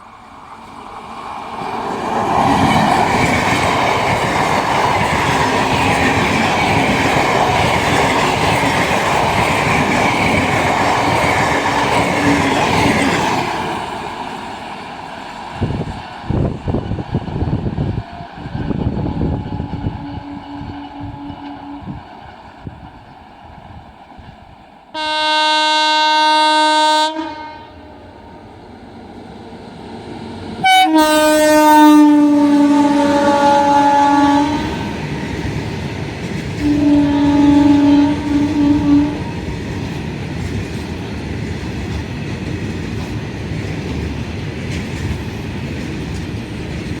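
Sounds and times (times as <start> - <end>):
train wheels rushing on rails: 0.0 - 47.0
train horn blasts: 18.6 - 22.1, 24.9 - 28.4, 30.6 - 35.0, 36.6 - 39.5.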